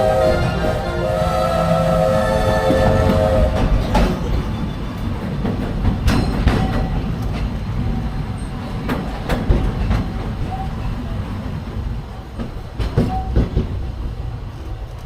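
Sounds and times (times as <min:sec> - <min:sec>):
train wheels rumbling on rails: 0:00.0 - 0:15.0
track clicks and knocks: 0:02.5 - 0:07.7, 0:08.6 - 0:10.8, 0:12.3 - 0:13.8.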